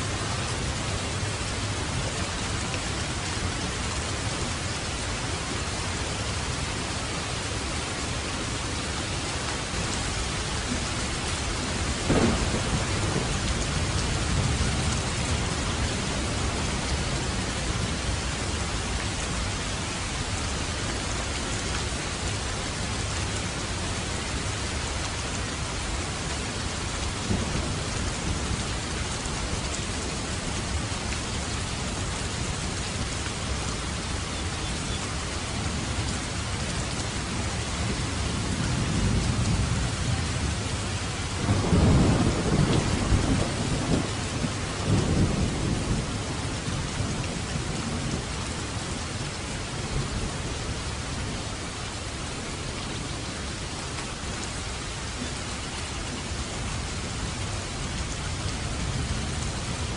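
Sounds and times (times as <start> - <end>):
heavy rain falling: 0.0 - 59.9
thunderclap rumbling: 10.7 - 17.5, 41.4 - 48.2.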